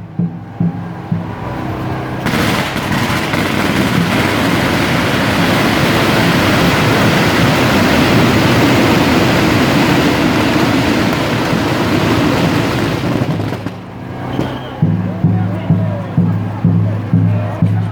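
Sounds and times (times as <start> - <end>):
firecrackers crackling: 1.5 - 15.1.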